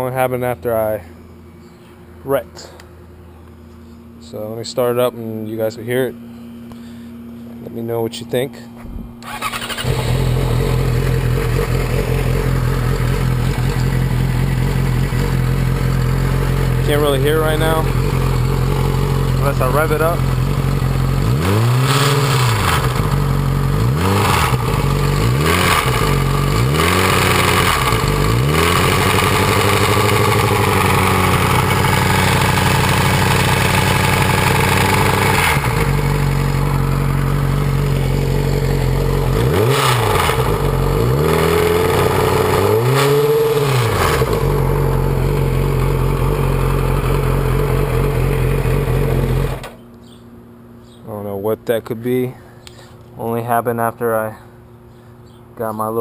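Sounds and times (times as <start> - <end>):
motorcycle engine idling and revving: 9.1 - 51.0.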